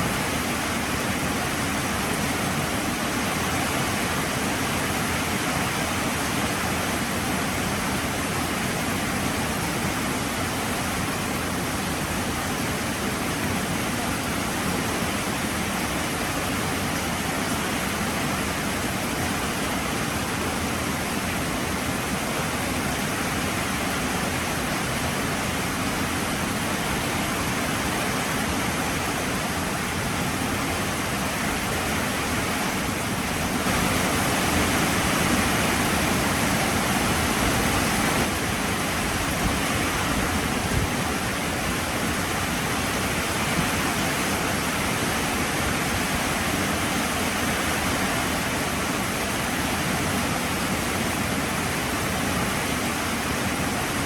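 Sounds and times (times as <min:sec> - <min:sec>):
heavy rain pouring: 0:25.7 - 0:51.6.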